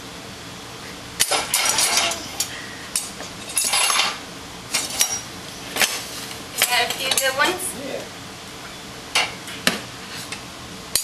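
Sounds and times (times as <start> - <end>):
dishes and cutlery clinking: 1.2 - 2.3, 3.4 - 4.2.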